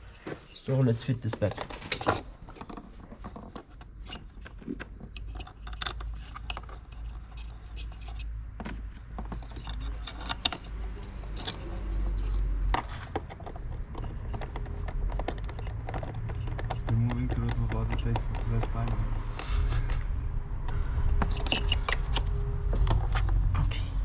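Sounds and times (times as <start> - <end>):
tools and parts clicking and rattling: 0.2 - 23.5
steady low rumble: 16.9 - 24.0.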